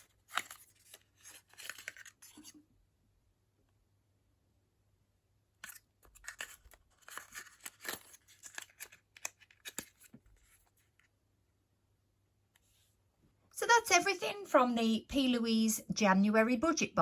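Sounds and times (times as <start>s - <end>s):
packaging rustling and crinkling: 0.0s - 2.5s, 5.6s - 11.0s.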